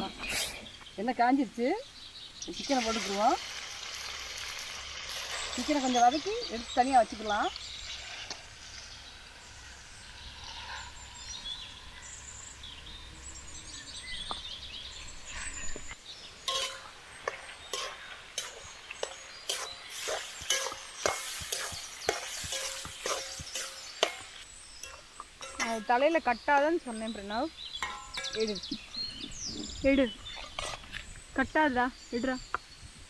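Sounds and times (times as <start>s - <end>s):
chicken sizzling in hot oil: 2.5s - 10.7s, 16.4s - 25.6s
ladle scraping a pan: 16.5s - 25.8s, 30.3s - 30.9s.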